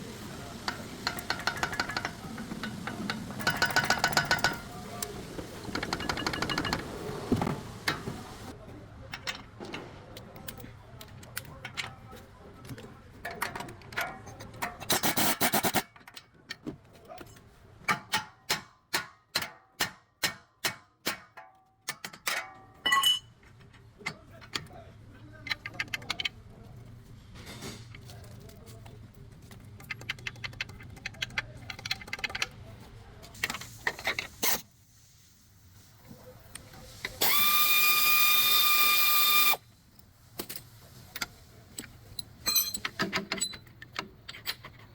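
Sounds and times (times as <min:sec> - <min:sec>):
hand tools clicking and clanking: 0:00.6 - 0:08.4, 0:09.1 - 0:26.4, 0:40.0 - 0:44.9.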